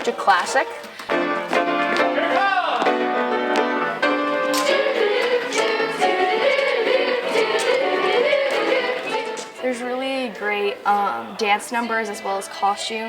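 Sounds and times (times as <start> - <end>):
instrumental accompaniment: 0.0 - 10.0
voices singing: 3.8 - 12.1.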